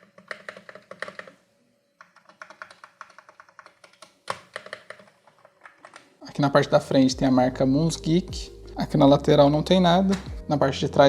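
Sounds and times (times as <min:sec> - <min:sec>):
keyboard typing: 0:00.0 - 0:01.4, 0:02.0 - 0:06.1.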